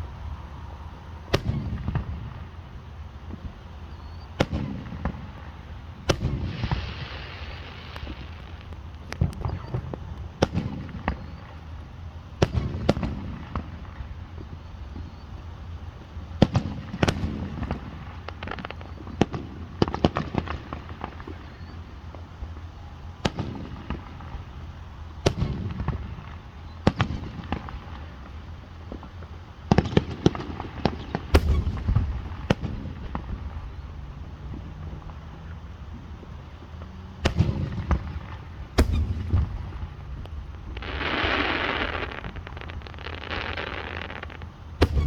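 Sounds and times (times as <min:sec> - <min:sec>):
fireworks bangs and cracks: 0:01.3 - 0:15.3, 0:16.3 - 0:45.0
low rumbling boom: 0:31.4 - 0:35.2, 0:37.2 - 0:42.8, 0:44.8 - 0:45.0.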